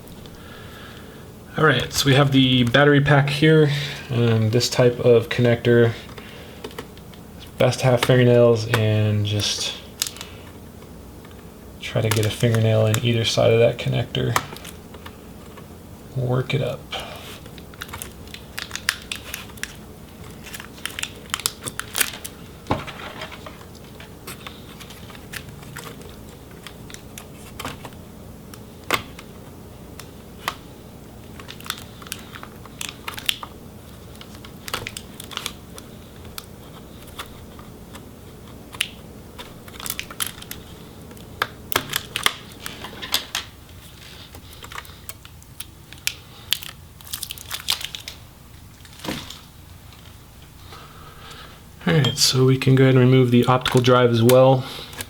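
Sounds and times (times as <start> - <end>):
crinkly rustling: 17.3 - 28.0, 28.6 - 50.8.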